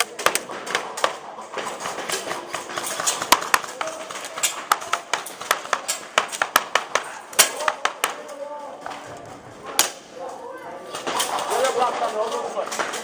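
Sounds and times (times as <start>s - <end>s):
airsoft guns firing: 0.0s - 8.4s, 9.7s - 10.1s.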